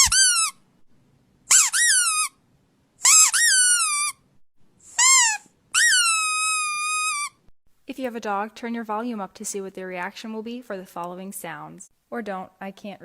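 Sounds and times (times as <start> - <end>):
squeaky toy squeaking: 0.0 - 0.6, 1.5 - 2.4, 3.0 - 4.2, 4.8 - 7.5.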